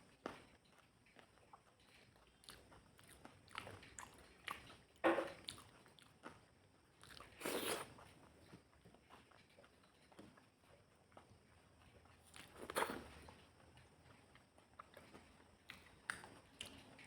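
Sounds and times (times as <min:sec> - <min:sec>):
wet chewing and biting: 0:01.2 - 0:08.1.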